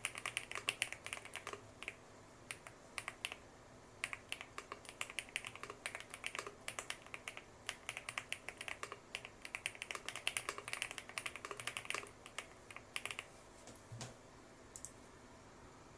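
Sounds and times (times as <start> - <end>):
mechanical keyboard typing: 0.0 - 3.4, 4.0 - 13.3.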